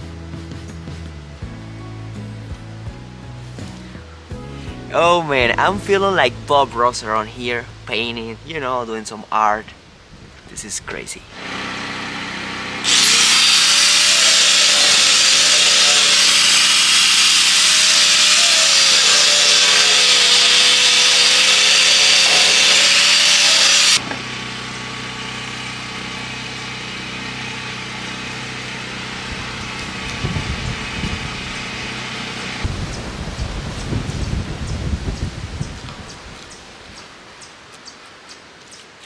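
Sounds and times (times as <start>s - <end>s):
power tool whining: 11.4s - 33.0s.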